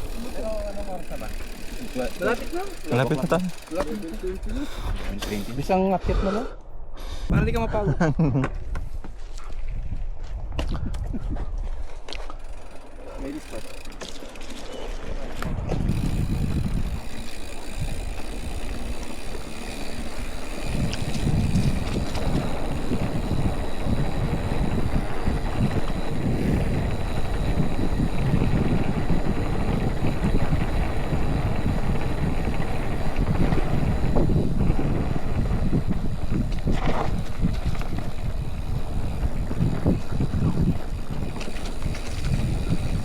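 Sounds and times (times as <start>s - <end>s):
tyres rumbling over trail: 0.0s - 5.9s, 12.4s - 43.0s
wind buffeting microphone: 0.0s - 12.3s, 14.8s - 43.0s.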